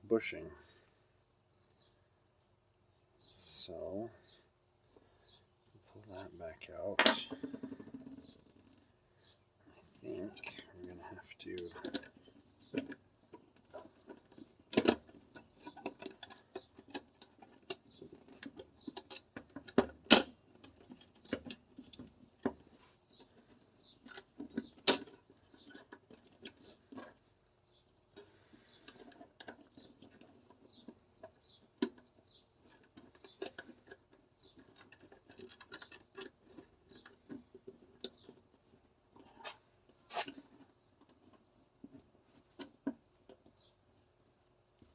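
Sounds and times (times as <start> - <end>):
pistol parts clicking and scraping: 11.5 - 43.6.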